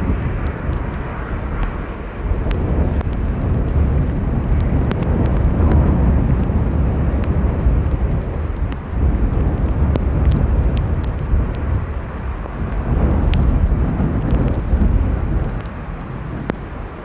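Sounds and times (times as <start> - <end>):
jet engine rumble: 0.0 - 17.0
wind buffeting microphone: 0.0 - 17.0.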